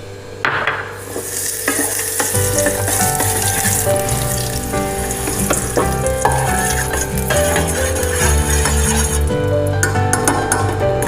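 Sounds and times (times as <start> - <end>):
ghee sizzling in a frying pan: 1.0 - 9.8
background music with bass line: 2.4 - 11.0.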